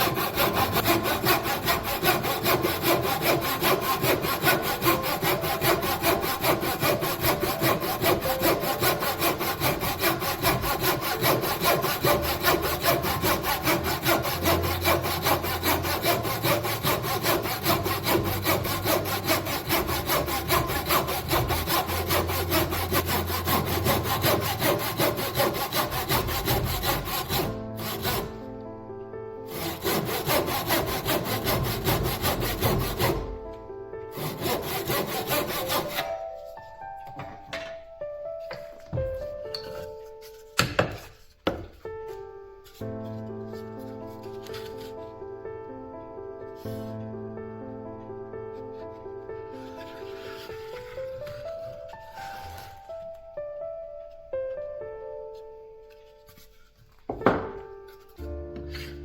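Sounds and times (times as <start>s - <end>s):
saw cutting wood: 0.0s - 28.5s, 29.5s - 33.4s, 34.1s - 36.7s.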